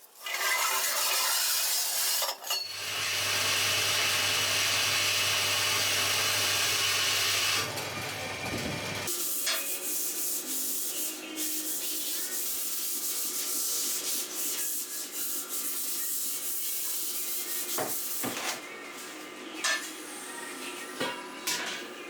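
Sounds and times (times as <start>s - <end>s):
power tool abrading: 2.6s - 9.1s
faint motor whine: 2.7s - 9.1s.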